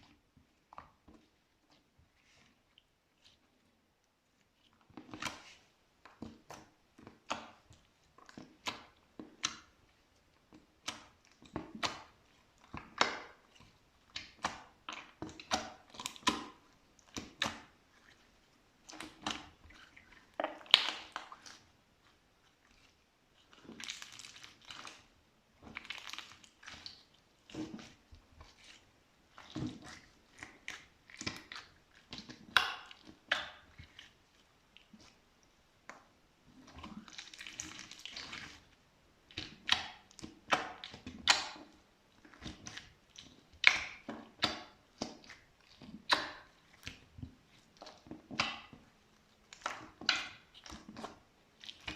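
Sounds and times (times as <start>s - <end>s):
slime squishing and popping: 18.9s - 21.6s, 23.4s - 28.0s, 43.6s - 47.0s.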